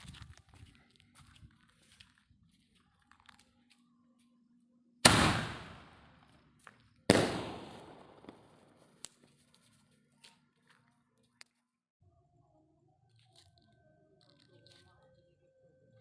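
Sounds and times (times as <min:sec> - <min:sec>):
firework bangs: 0:05.1 - 0:06.2, 0:07.1 - 0:08.9.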